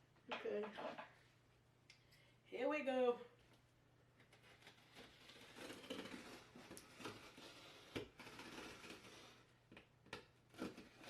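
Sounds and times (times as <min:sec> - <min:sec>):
knife slicing tape and cardboard: 0:04.4 - 0:09.4.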